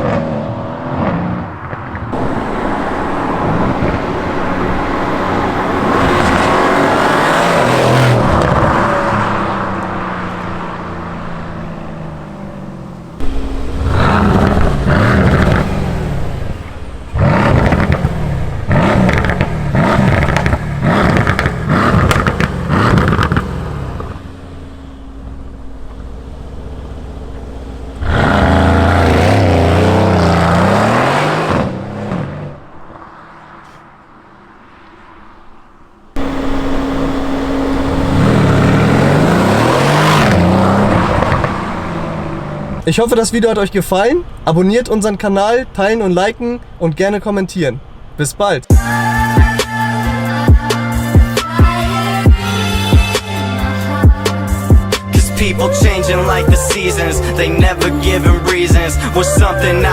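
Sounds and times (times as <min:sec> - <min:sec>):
car engine revving: 0:00.0 - 0:59.9
exhaust pops and crackles: 0:13.0 - 0:28.6.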